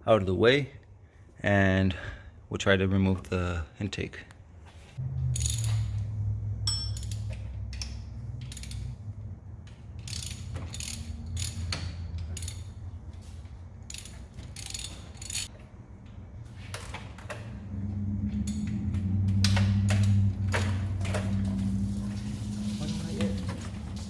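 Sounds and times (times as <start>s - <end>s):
steady low hum: 5.0s - 24.0s
ratchet wrench clicking: 5.3s - 13.0s, 13.8s - 15.5s.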